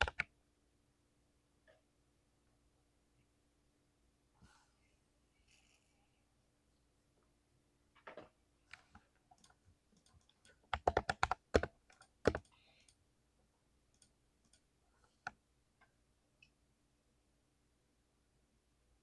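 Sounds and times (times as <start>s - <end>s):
mechanical keyboard typing: 0.0s - 0.3s, 9.4s - 13.0s.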